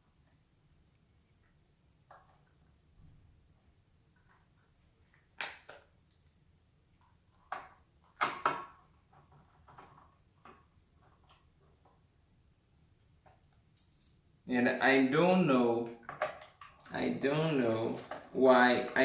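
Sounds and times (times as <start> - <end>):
clicks and knocks of tools: 13.2 - 14.2.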